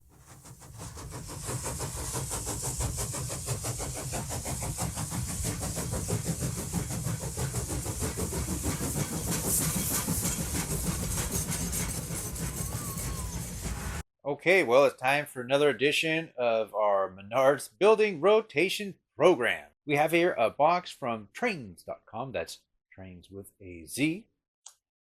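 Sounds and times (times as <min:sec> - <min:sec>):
train clattering over tracks: 0:00.3 - 0:14.0.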